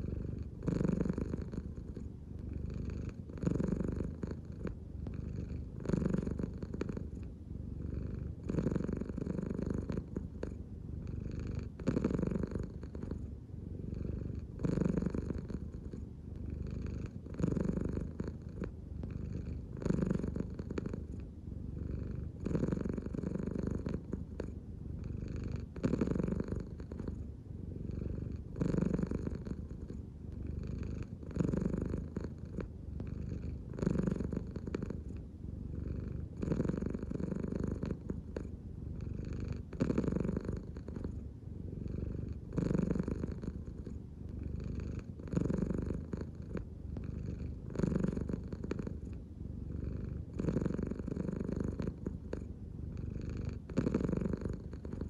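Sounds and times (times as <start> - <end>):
cat purring: 0.0 - 55.0.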